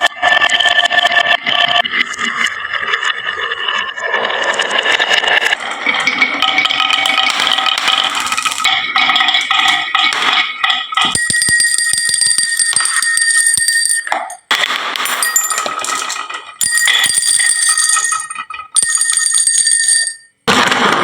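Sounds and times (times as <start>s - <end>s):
marbles clattering on wood: 4.5s - 20.3s
bell-like ringing: 5.5s - 20.4s.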